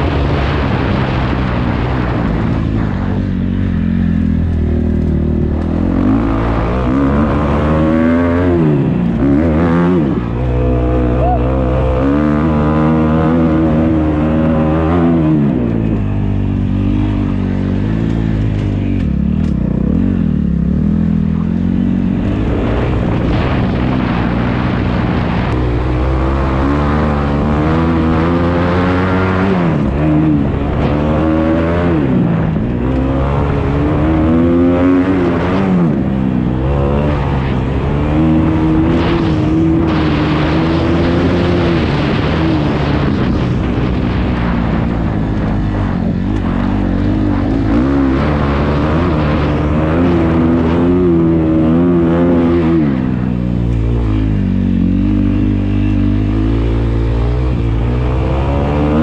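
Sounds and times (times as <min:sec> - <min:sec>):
dirt bike engine revving: 0:00.0 - 0:59.0.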